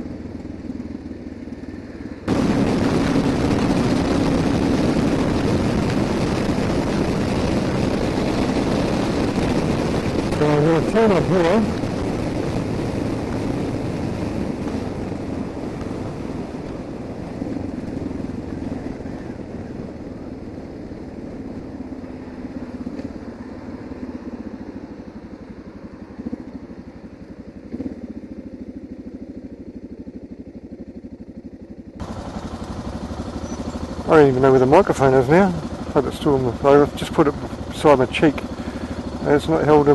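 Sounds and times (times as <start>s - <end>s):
motorcycle engine running: 0.0s - 39.9s
road noise: 0.0s - 39.9s
wind noise: 2.2s - 22.8s.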